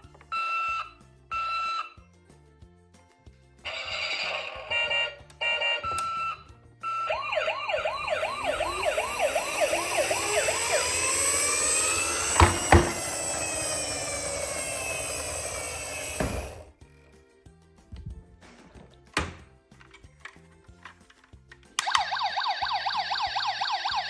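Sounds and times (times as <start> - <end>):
toy electronic sirens: 0.4 - 2.0, 3.7 - 16.7, 21.8 - 24.0
sharp knocks: 12.4 - 13.1.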